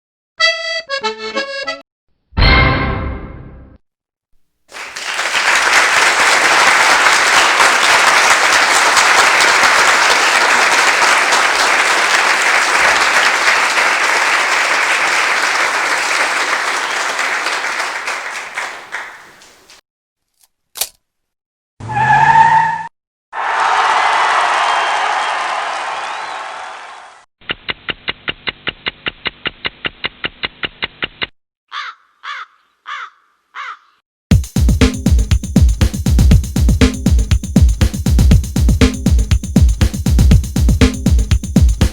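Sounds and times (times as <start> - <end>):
crowd clapping: 4.7 - 19.8, 23.4 - 27.2, 37.8 - 41.9
sharp click: 20.4 - 21.0.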